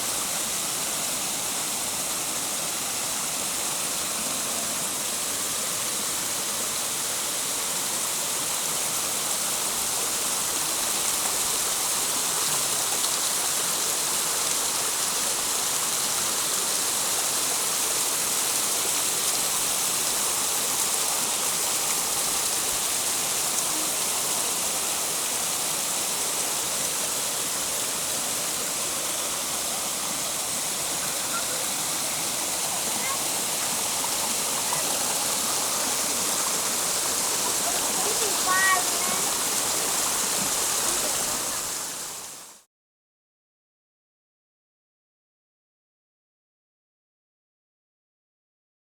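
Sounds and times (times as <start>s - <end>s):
waterfall rushing: 0.0s - 42.6s.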